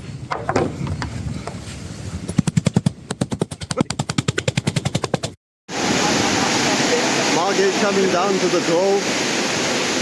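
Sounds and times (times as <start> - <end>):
fast rattle of sharp knocks: 0.3 - 1.2.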